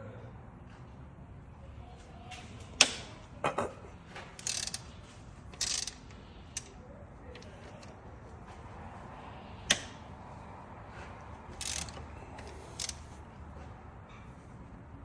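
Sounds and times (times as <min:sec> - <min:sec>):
socket ratchet clicking: 0:04.4 - 0:04.8, 0:05.5 - 0:06.7, 0:11.6 - 0:13.1.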